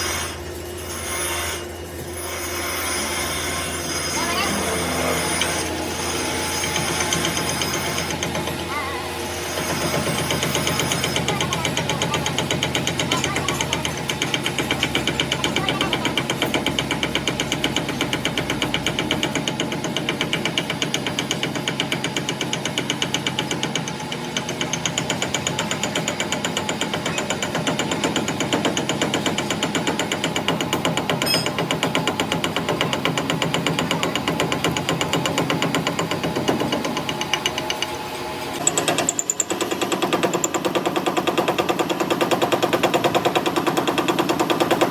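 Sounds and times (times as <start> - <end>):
metal lathe cutting: 0.0 - 13.2
rapid steady knocking: 9.5 - 38.0, 38.6 - 44.9.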